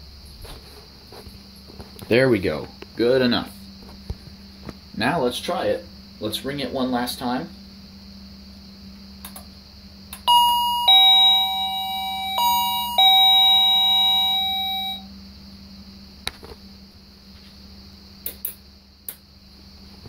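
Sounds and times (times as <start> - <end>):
door chime ding-dong: 10.2 - 15.1.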